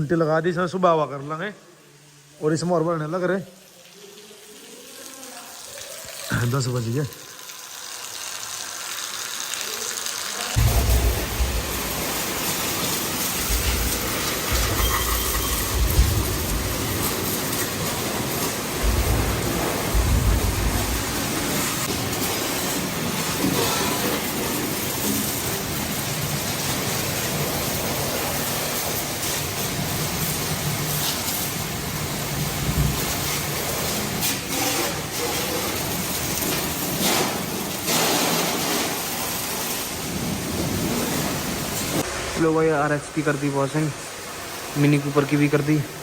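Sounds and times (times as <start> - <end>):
water spraying: 0.0 - 46.0
low thumps: 10.6 - 12.4, 18.7 - 21.9.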